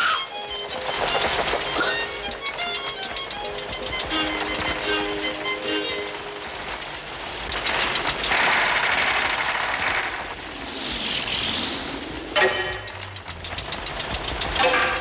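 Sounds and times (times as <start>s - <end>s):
rushing hiss: 8.3s - 12.5s.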